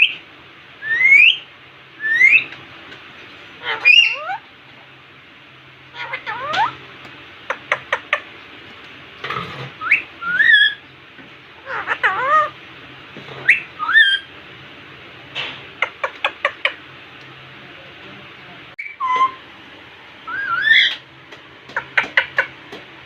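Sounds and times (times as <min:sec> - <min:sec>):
parrot whistled calls: 0:00.8 - 0:02.5, 0:03.6 - 0:04.4, 0:09.8 - 0:10.8, 0:11.6 - 0:12.6, 0:13.4 - 0:14.3, 0:18.8 - 0:19.5, 0:20.2 - 0:21.0.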